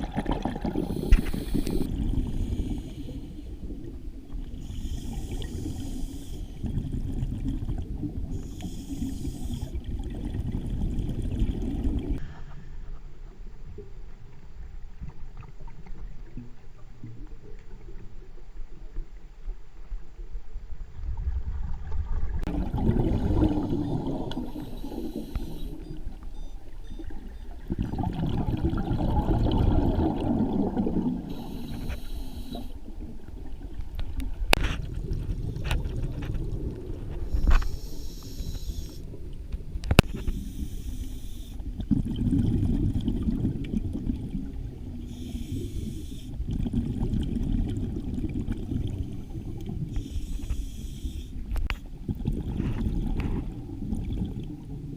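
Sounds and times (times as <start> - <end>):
exhaled bubbles rumbling: 0.0 - 5.8, 6.5 - 8.5, 9.7 - 12.2, 21.0 - 31.9, 32.9 - 37.6, 41.7 - 45.2, 46.4 - 49.9, 51.5 - 54.9
hissing regulator inhalations: 0.8 - 3.7, 4.6 - 6.6, 8.4 - 9.8, 24.3 - 26.2, 31.3 - 32.9, 37.3 - 39.1, 40.1 - 41.7, 45.1 - 46.4, 49.1 - 51.6.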